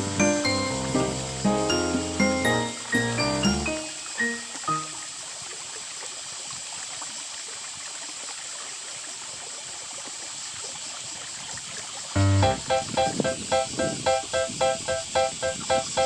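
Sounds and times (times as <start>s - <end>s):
music: 0.0s - 5.1s, 12.2s - 16.0s
river water babbling: 0.0s - 6.3s.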